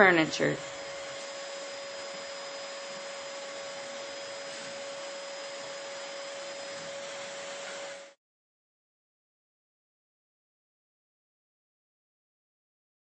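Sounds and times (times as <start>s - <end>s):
vacuum cleaner running: 0.0s - 8.2s.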